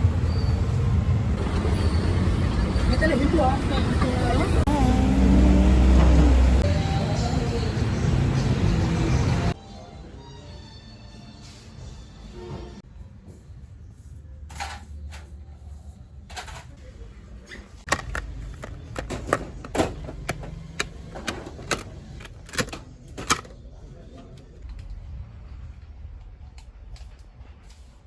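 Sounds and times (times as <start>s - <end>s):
objects clicking and knocking: 17.9s - 23.6s.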